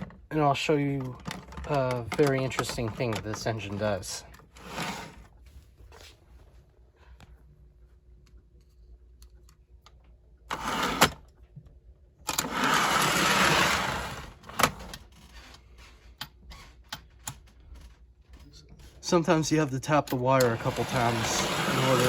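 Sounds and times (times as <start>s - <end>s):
small electric motor running: 20.5s - 22.0s.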